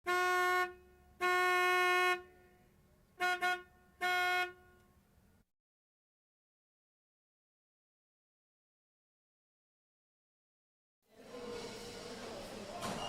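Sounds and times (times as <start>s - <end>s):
car horn honking: 0.0s - 5.0s.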